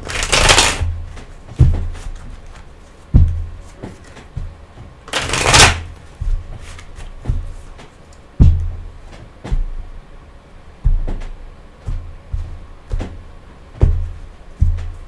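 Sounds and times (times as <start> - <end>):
cards being riffled: 0.0 - 1.0, 5.1 - 6.0
cards thumping: 0.0 - 2.7, 5.1 - 7.4.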